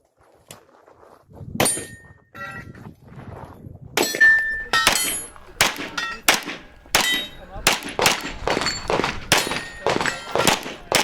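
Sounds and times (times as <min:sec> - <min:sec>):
steel targets clanging: 0:04.0 - 0:11.0
pistol shots: 0:04.1 - 0:11.0.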